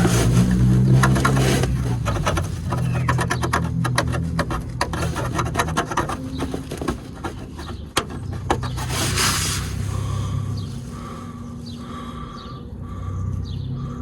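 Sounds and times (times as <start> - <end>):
hand scraping on car: 0.0 - 11.2.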